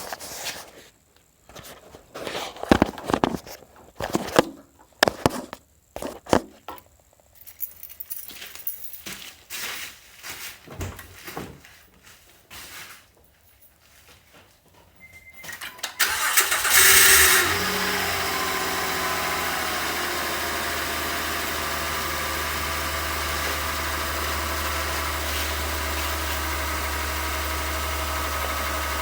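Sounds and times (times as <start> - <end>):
rustling handling noises: 0.0 - 15.6.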